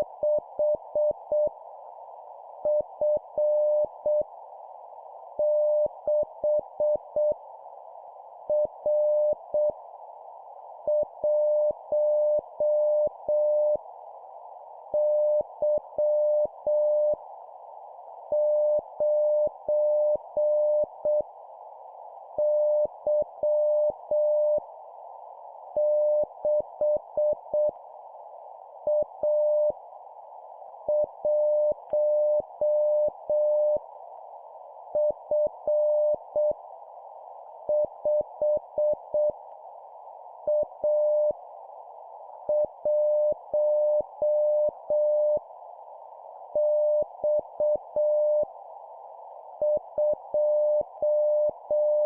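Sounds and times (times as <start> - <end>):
morse code beeps: 49.7 - 52.0.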